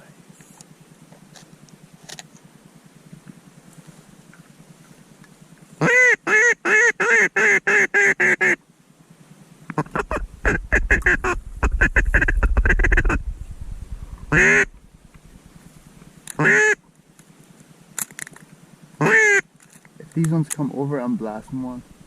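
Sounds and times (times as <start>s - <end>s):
duck quacking: 5.8s - 8.6s, 9.7s - 13.2s, 14.3s - 14.8s, 16.4s - 16.8s, 19.0s - 19.4s.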